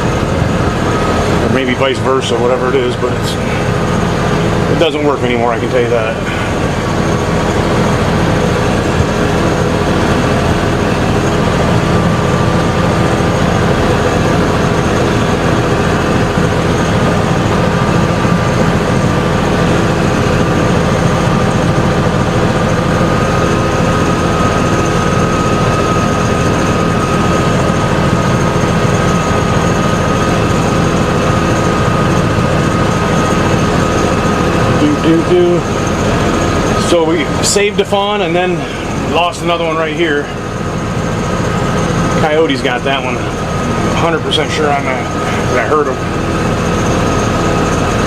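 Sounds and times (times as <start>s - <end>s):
thin whine: 0.0s - 48.0s
tractor engine running: 0.0s - 48.0s.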